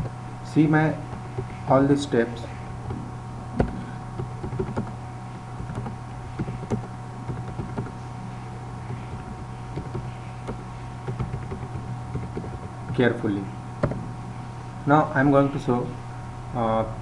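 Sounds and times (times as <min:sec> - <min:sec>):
low hum: 0:00.0 - 0:17.0
faint irregular clicks: 0:05.6 - 0:13.0.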